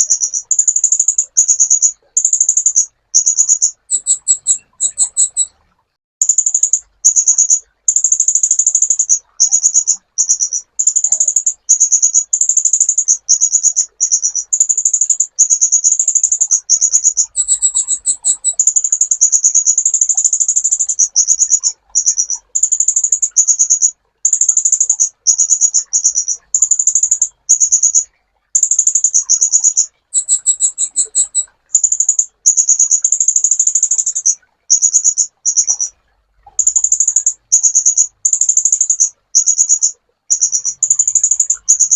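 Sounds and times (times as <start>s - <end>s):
bird singing high chattering trills: 0.0s - 5.6s, 6.2s - 41.9s.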